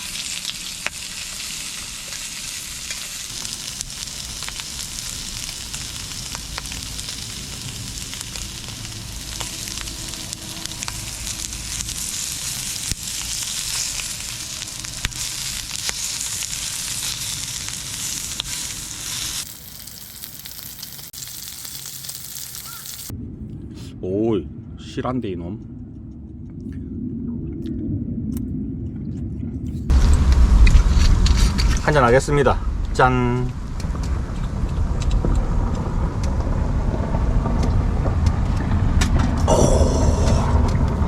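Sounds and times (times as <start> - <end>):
meat sizzling as it fries: 0.0 - 23.1.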